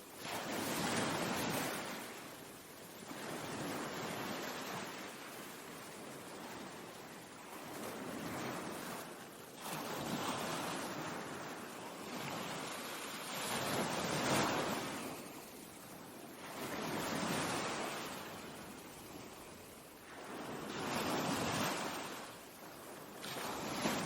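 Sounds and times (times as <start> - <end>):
ocean waves breaking: 16.4 - 22.3.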